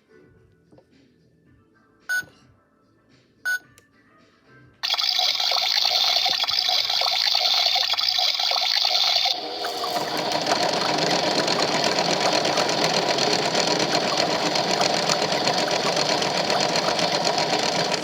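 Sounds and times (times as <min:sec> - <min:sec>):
toy button beeps: 0:02.1 - 0:02.3
toy washing machine churning water: 0:04.8 - 0:18.0.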